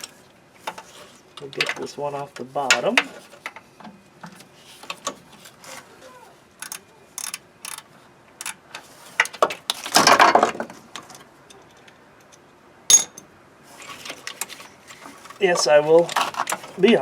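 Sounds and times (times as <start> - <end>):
metal hand tools clinking: 12.9 - 13.3.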